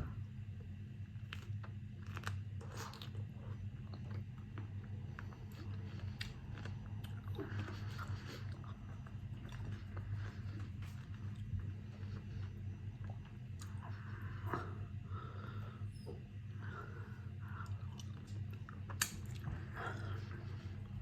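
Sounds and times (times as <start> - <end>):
steady low hum: 0.0 - 21.0
person chewing food: 1.2 - 15.6, 16.6 - 21.0
small crunches and clicks: 18.0 - 19.5.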